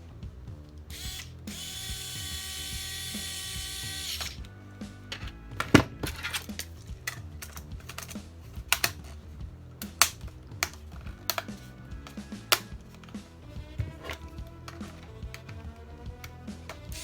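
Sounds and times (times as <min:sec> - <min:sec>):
quiet background music: 0:00.0 - 0:17.0
small hard parts clicking: 0:05.1 - 0:17.0.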